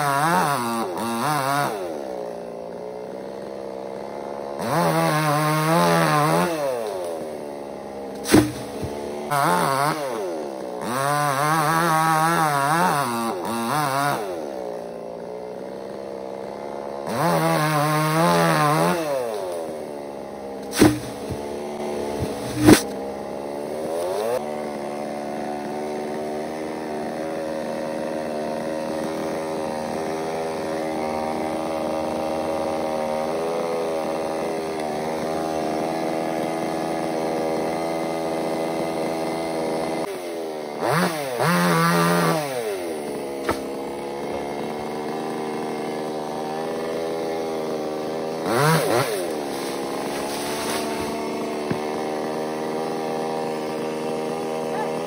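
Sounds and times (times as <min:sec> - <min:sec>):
chainsaw revving and idling: 0:00.0 - 0:55.0
sharp knocks: 0:08.2 - 0:09.0, 0:20.6 - 0:21.6, 0:22.2 - 0:23.0, 0:43.4 - 0:44.5, 0:50.6 - 0:52.1.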